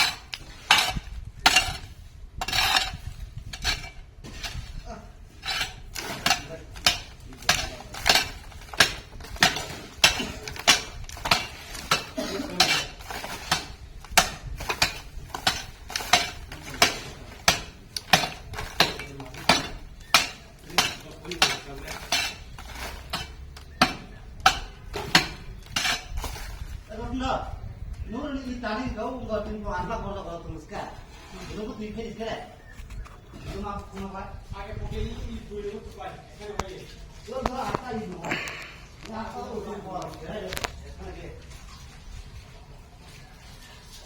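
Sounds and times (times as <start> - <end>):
trowel scraping and clinking: 0.0 - 26.9.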